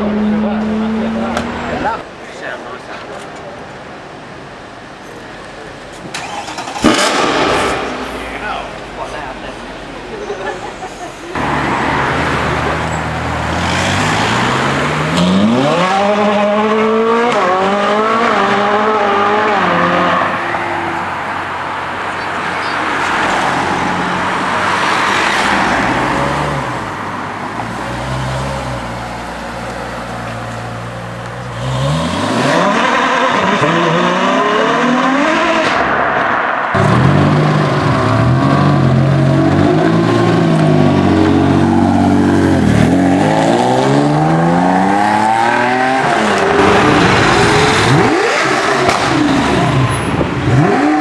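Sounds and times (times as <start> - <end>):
supercar engine accelerating: 36.8 - 51.0.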